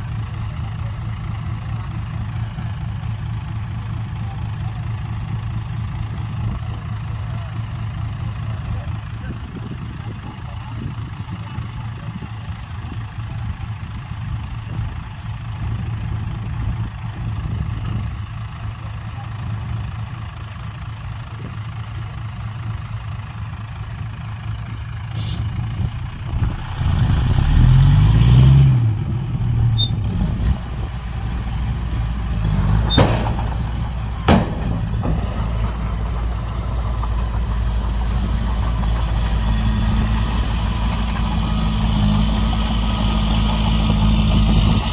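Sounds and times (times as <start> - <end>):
diesel engine idling and revving: 0.0 - 44.9
sharp knocks: 32.8 - 36.0.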